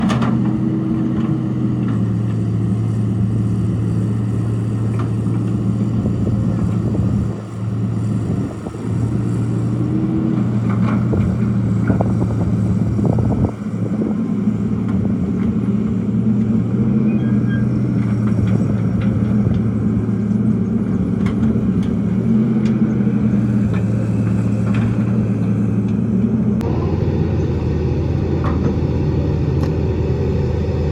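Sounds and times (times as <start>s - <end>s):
excavator diesel engine running: 0.0s - 30.9s
high whine: 26.4s - 30.9s.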